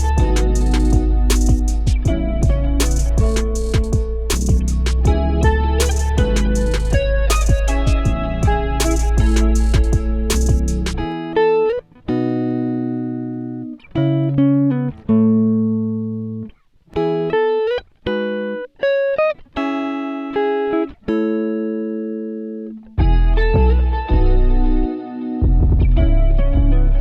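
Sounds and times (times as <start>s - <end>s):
plucked guitar chords: 0.0s - 27.0s.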